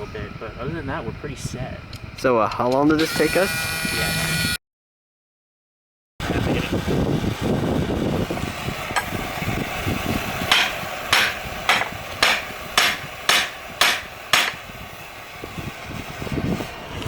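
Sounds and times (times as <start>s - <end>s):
low rumbling noise: 6.2s - 17.0s
hammer striking rivet: 10.5s - 14.6s.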